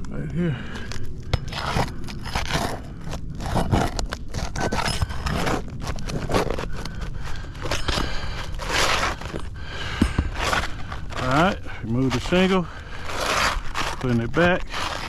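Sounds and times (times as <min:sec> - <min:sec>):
roof shingles scraping and crackling: 0:00.5 - 0:15.0.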